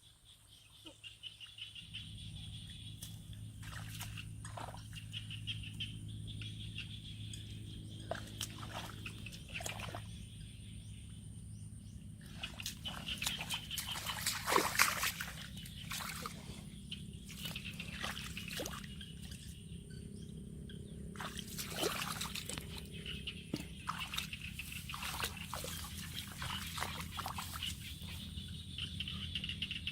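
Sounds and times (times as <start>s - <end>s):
steady low hum: 1.4s - 29.9s
water splashing and trickling: 2.9s - 5.3s, 7.9s - 10.2s, 12.2s - 19.6s, 21.1s - 28.5s.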